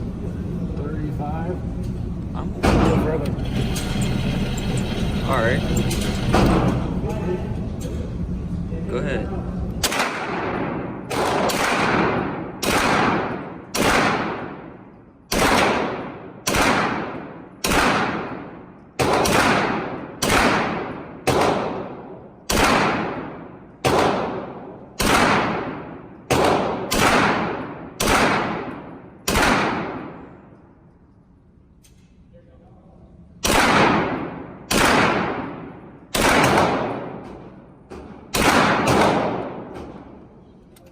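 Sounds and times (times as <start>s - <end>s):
gunshots echoing: 9.8s - 30.4s, 33.4s - 40.2s.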